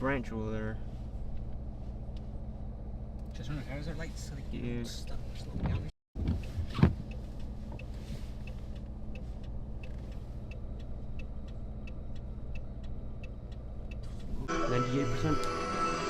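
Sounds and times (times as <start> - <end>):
idling engine hum: 0.0 - 16.0
hazard light flasher ticking: 7.0 - 14.3.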